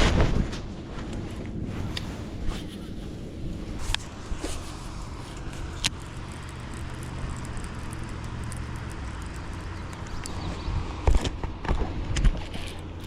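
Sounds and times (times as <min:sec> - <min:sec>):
boat motor humming: 0:02.2 - 0:13.0
sharp clicks: 0:03.8 - 0:11.5.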